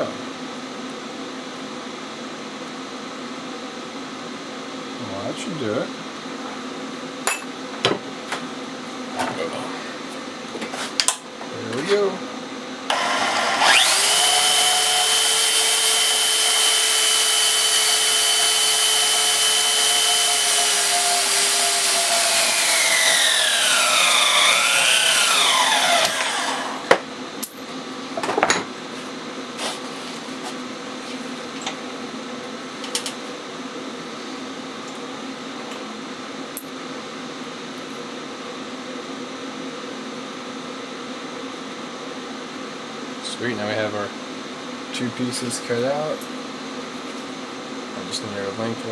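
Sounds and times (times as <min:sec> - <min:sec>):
power saw cutting aluminum: 0:12.9 - 0:26.9
saw spinning down whine: 0:12.9 - 0:26.9.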